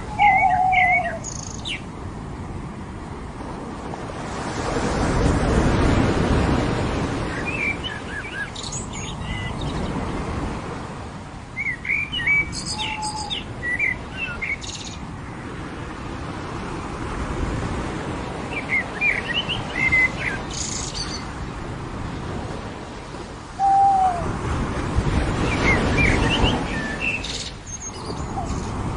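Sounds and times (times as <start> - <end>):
birds chirping: 0.0 - 1.9, 11.6 - 15.0, 23.6 - 24.3, 25.4 - 28.8
ocean surf on a beach: 0.0 - 28.9.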